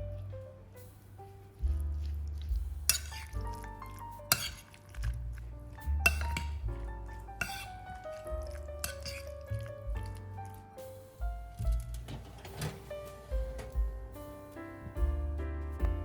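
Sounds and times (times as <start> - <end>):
keyboard and bass music: 0.0 - 16.0
kitchenware clinking: 2.9 - 3.4, 4.3 - 4.9, 7.4 - 7.8, 8.8 - 9.4.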